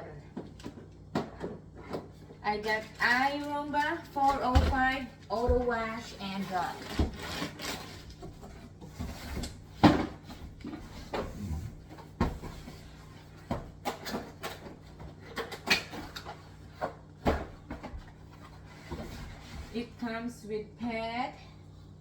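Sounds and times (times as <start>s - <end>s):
plastic parts and packaging handled: 0.4s - 10.9s.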